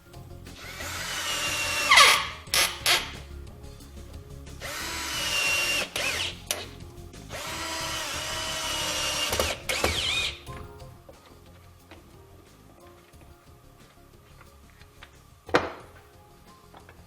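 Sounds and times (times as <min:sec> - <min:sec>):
power drill driving screws: 0:00.6 - 0:03.2, 0:04.6 - 0:06.7, 0:07.3 - 0:10.5.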